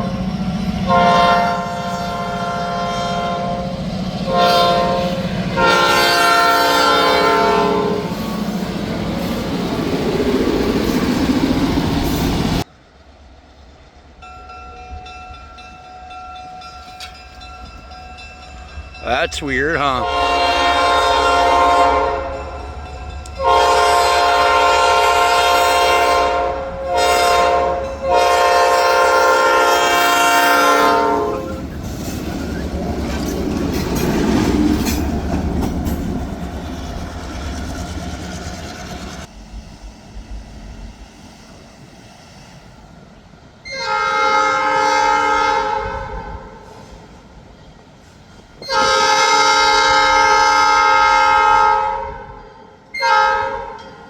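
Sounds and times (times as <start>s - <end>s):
train rumbling past: 0.0s - 54.0s
locomotive air horn: 0.9s - 3.6s, 4.3s - 8.2s, 20.0s - 22.4s, 23.4s - 31.6s, 43.7s - 46.6s, 48.6s - 52.3s, 53.0s - 53.8s.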